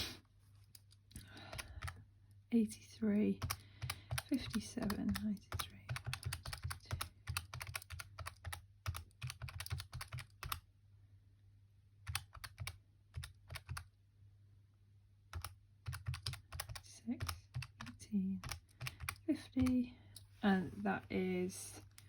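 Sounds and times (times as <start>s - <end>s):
calculator keys tapping: 1.2s - 2.0s, 3.4s - 10.6s, 12.1s - 13.8s, 15.3s - 19.8s.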